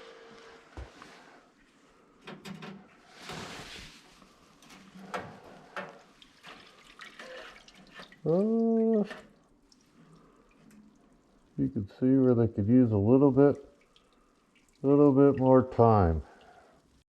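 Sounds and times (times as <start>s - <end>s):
liquid dripping and splashing: 4.2s - 12.4s, 13.3s - 17.0s.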